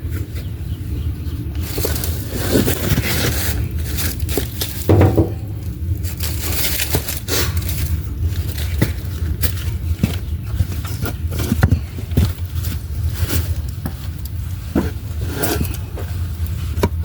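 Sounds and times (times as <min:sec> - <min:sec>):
knocks and scrapes: 0:01.8 - 0:07.9
loud clunk: 0:04.9 - 0:05.8.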